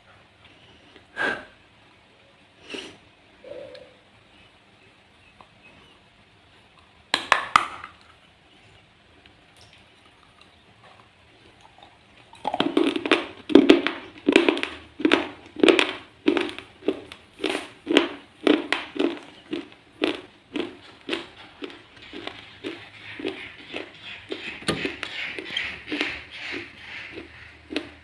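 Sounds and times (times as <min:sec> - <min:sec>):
loud crunchy chewing: 0:08.0 - 0:28.0.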